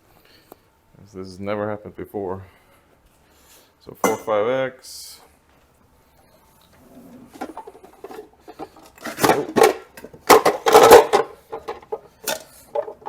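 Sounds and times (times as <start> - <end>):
kitchen utensils clattering: 6.9 - 13.0.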